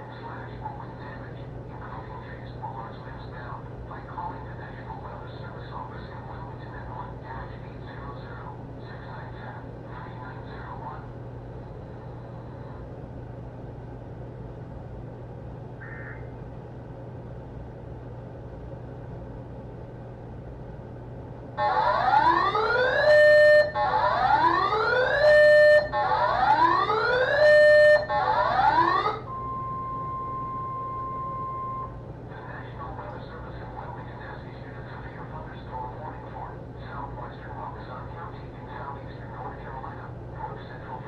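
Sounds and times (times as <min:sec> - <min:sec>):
faint radio hiss: 0:00.0 - 0:21.2, 0:32.2 - 0:41.0
low hum: 0:00.0 - 0:41.0
electronic whooping alarm: 0:21.6 - 0:32.0.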